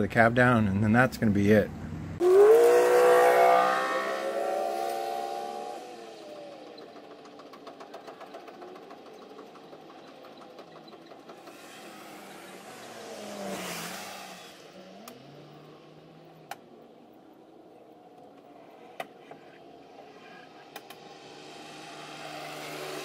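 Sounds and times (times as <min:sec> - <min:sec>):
vehicle passing by: 0:01.5 - 0:06.2, 0:11.4 - 0:18.9, 0:19.6 - 0:23.0.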